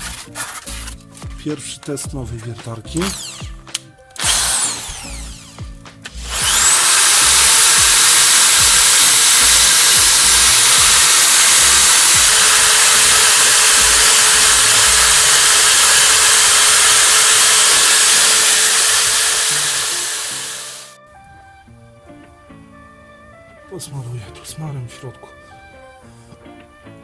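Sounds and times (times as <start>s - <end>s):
faint background music: 0.0s - 6.4s, 21.0s - 27.0s
electric drill sanding metal: 3.0s - 21.0s.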